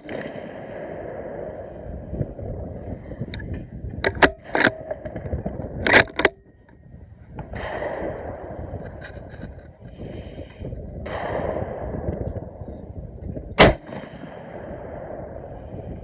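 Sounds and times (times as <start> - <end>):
gunshots: 0.0 - 1.6, 13.6 - 15.2
steady low rumble: 0.0 - 16.0.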